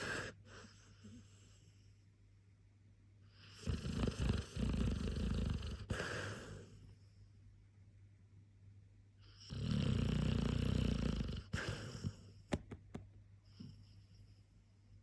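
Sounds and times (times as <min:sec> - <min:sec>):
dog snoring: 0:00.0 - 0:01.6, 0:03.3 - 0:06.8, 0:09.2 - 0:12.4.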